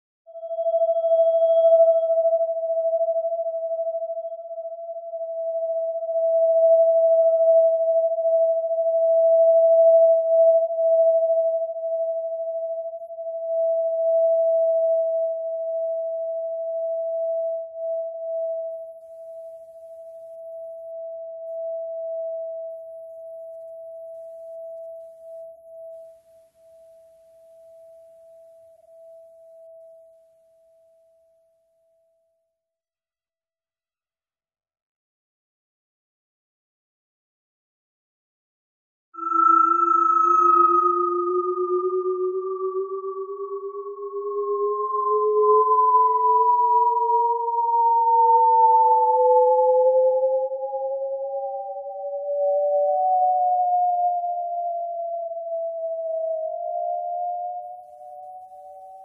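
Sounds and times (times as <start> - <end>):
high pure vibrating tone: 39.2 - 52.2.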